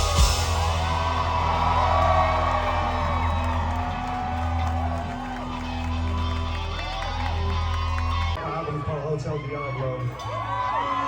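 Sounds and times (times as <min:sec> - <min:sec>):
live rock music: 0:00.0 - 0:08.8
crowd shouting and whooping: 0:00.0 - 0:11.0.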